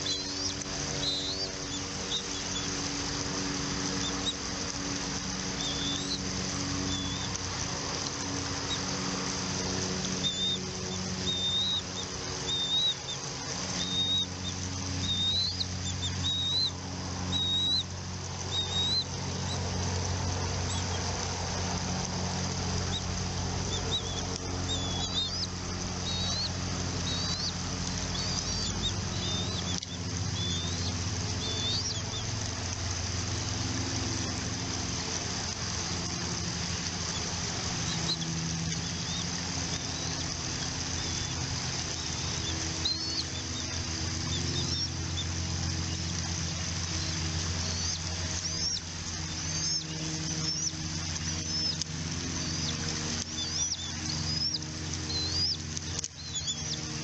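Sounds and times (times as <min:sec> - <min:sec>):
eagle chirping: 0:00.0 - 0:02.6, 0:13.8 - 0:14.3, 0:23.7 - 0:32.2, 0:42.0 - 0:45.3, 0:47.0 - 0:50.8
steady low hum: 0:00.0 - 0:57.0.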